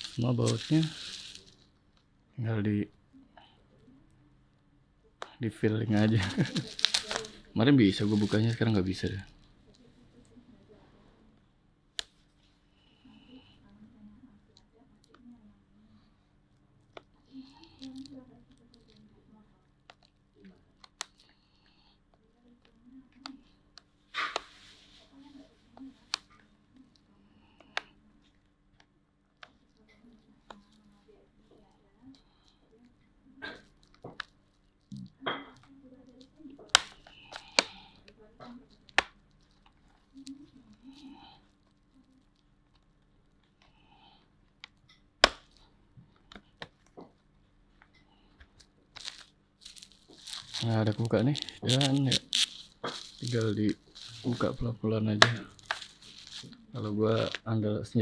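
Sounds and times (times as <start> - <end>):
scraping rustle: 0.0 - 1.6, 49.0 - 54.6, 55.6 - 57.3.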